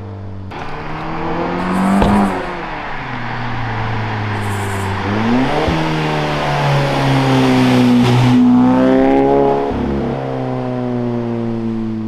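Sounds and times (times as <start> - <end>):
car engine revving: 0.5 - 8.8.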